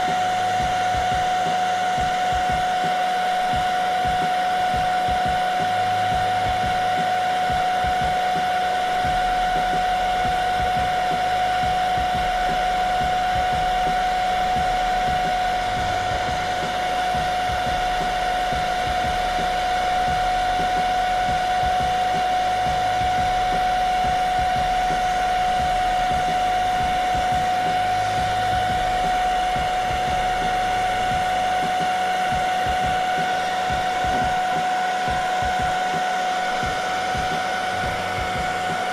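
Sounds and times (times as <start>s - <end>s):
hair dryer running: 0.0s - 38.9s.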